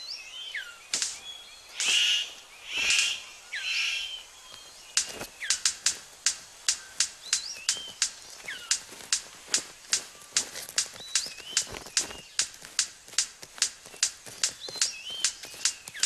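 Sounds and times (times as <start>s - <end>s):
thin bird whistles: 0.0s - 4.7s
harsh buzzy bird calls: 0.0s - 16.0s
rapid sharp bird clicks: 0.6s - 16.0s.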